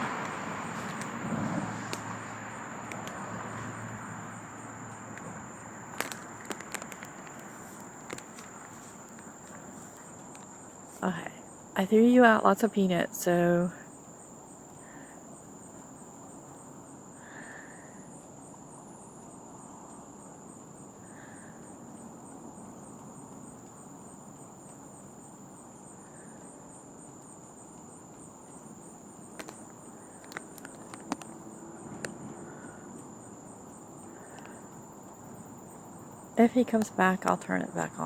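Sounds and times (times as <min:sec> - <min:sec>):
insects trilling: 0:00.0 - 0:38.0
sharp clicks: 0:29.3 - 0:31.4.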